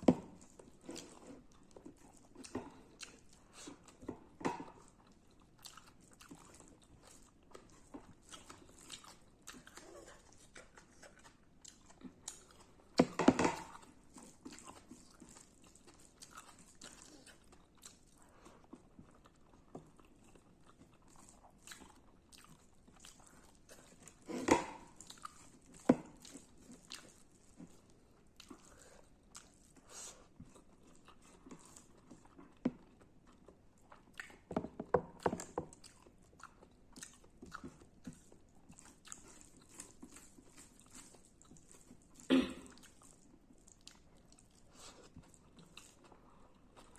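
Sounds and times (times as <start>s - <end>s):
chewing radish and rice: 0.0s - 46.9s.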